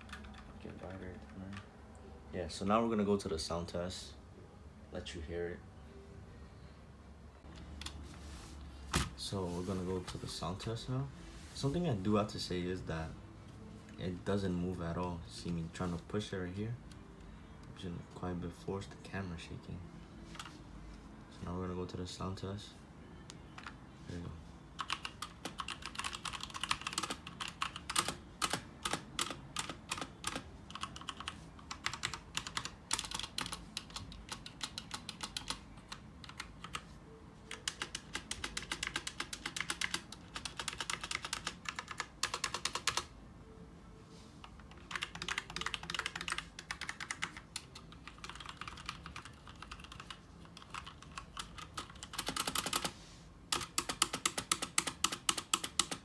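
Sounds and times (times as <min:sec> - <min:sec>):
mechanical keyboard typing: 0:00.0 - 0:01.7, 0:24.8 - 0:36.8, 0:37.5 - 0:43.1, 0:44.4 - 0:56.0.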